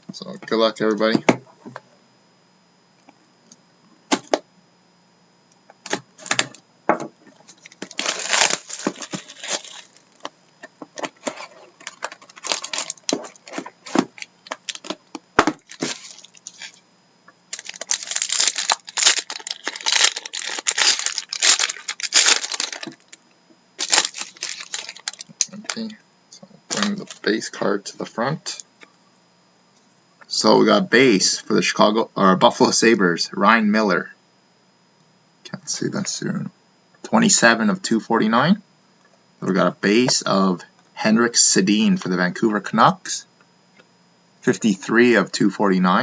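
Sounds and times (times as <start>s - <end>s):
plastic wrapping crackling: 7.3s - 10.3s, 11.0s - 16.8s, 17.5s - 23.2s, 23.8s - 25.9s, 26.7s - 27.4s.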